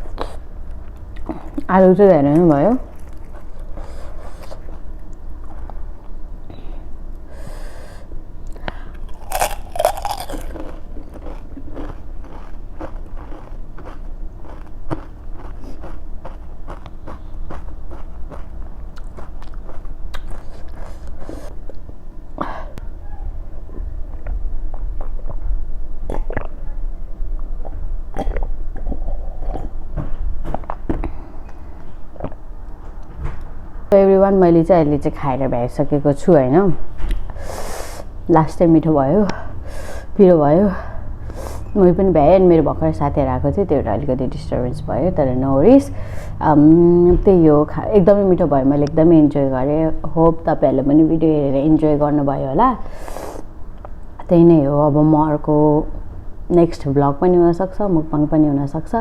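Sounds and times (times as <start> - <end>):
steady low hum: 0.0 - 59.0
crunchy chewing: 2.8 - 5.8, 8.5 - 21.8
crunchy bite: 9.0 - 21.2.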